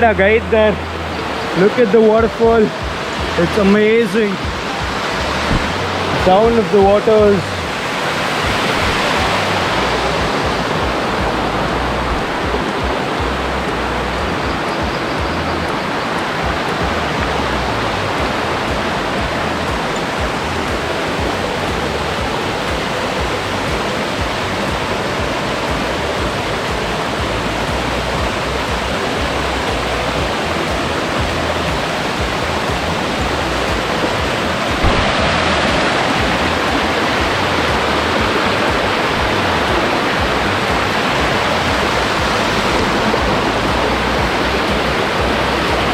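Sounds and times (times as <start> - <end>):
waterfall rushing over rock: 0.0 - 45.9.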